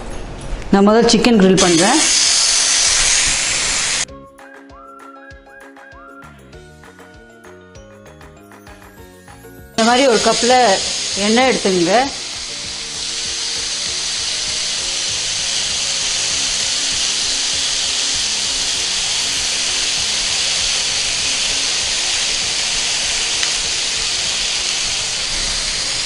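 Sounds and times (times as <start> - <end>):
skewers sizzling on grill pan: 1.6 - 4.1, 9.8 - 26.0
soft background music: 4.0 - 26.0.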